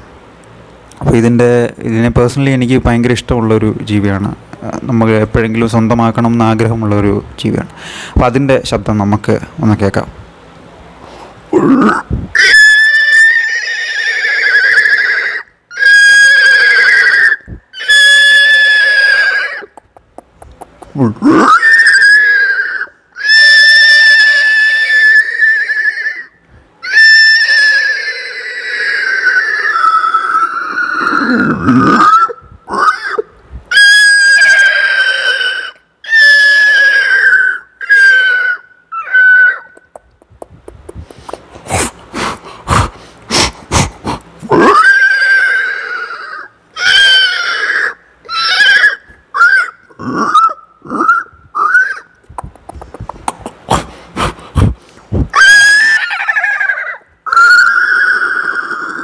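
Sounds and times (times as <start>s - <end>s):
man imitating horse whinnies: 11.5s - 19.8s, 20.9s - 39.7s, 44.4s - 52.0s, 53.2s - 59.0s.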